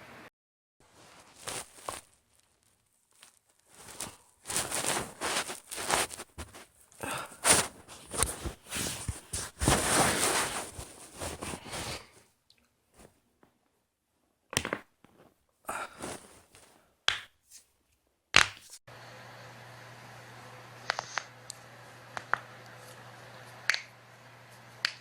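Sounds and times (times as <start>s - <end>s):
rustling and shifting: 0.8s - 12.3s, 15.1s - 16.9s.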